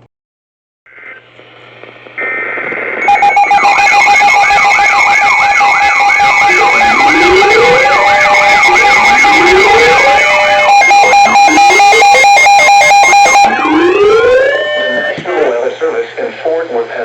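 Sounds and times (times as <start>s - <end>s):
steady electronic tone: 2.2s - 15.3s
alert siren yelping and wailing: 3.0s - 15.3s.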